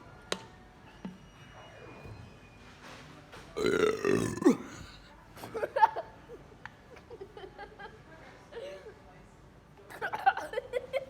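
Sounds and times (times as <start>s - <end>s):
person burping loudly: 3.6s - 5.0s.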